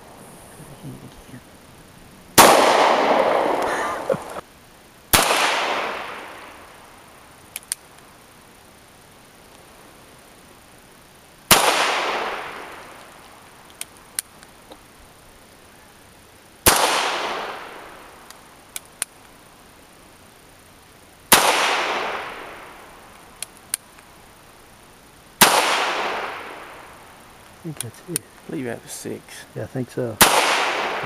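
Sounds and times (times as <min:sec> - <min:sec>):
faint light clicks: 0:07.5 - 0:08.1, 0:13.0 - 0:14.8
handgun gunshots with echo: 0:30.2 - 0:31.0.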